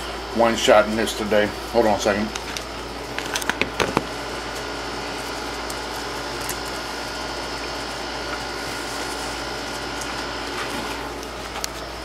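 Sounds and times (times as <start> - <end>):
appliance humming: 0.0 - 12.0
camera knocks: 3.4 - 4.1.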